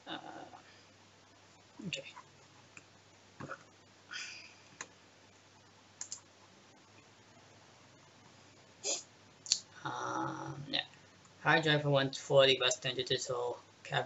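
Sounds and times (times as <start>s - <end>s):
faint low hum: 0.0s - 14.0s
mouse and keyboard clicks: 6.0s - 6.2s.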